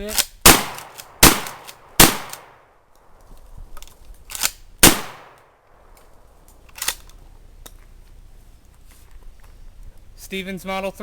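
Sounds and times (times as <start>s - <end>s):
loud shotgun shot: 0.4s - 2.7s, 4.8s - 5.4s
gunshot echo: 0.5s - 2.7s, 4.8s - 5.4s.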